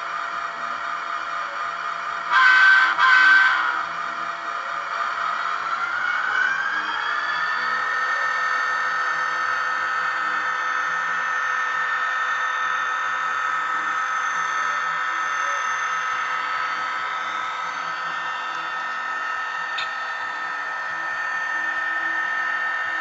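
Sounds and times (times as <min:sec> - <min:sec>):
model locomotive engine sound: 0:00.0 - 0:23.0.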